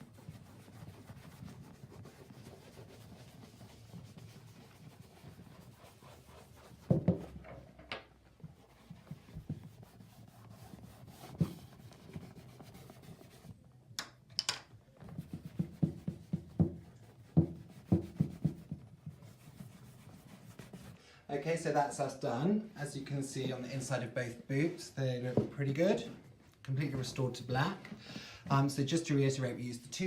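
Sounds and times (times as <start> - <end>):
cloth rubbing on leather boot: 0.0 - 7.4, 8.3 - 13.6, 15.0 - 26.3
boot knocking: 15.2 - 18.8.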